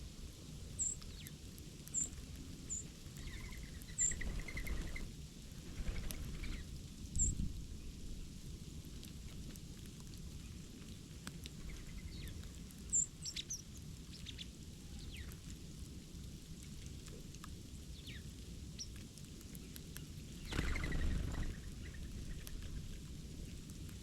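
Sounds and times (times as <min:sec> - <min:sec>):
small birds chirping: 0:00.8 - 0:05.1, 0:05.8 - 0:07.4, 0:11.6 - 0:15.4, 0:17.9 - 0:19.0, 0:19.6 - 0:23.0
low background rumble: 0:20.2 - 0:24.0.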